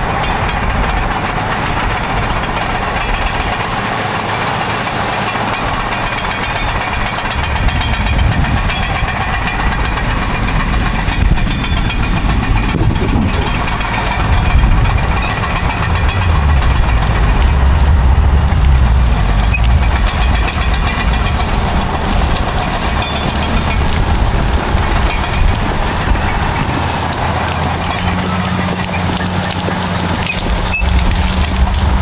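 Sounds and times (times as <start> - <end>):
bulldozer diesel engines rumbling: 0.0 - 32.0
steel tracks clanking: 0.0 - 32.0.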